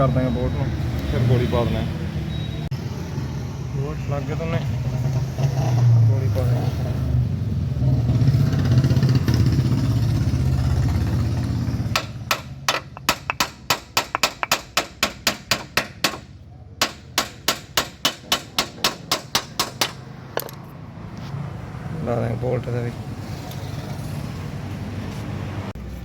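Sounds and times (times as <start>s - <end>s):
hammering on metal: 11.8s - 20.1s.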